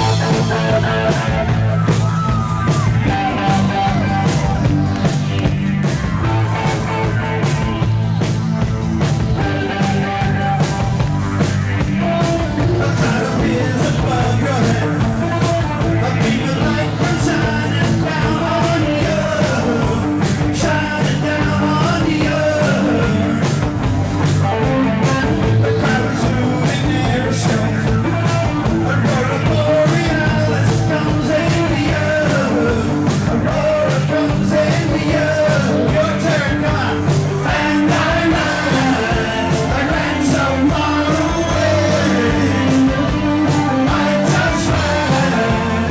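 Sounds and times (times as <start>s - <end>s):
rock band playing: 0.0s - 45.9s
person singing: 12.0s - 23.6s, 25.2s - 45.9s.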